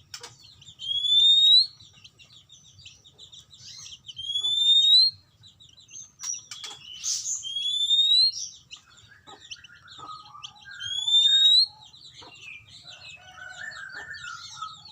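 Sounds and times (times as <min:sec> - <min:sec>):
lower shorter bird calls: 0:00.0 - 0:14.9
bird whistles and chattering: 0:00.1 - 0:01.9, 0:03.6 - 0:05.2, 0:05.9 - 0:12.6, 0:13.5 - 0:14.9.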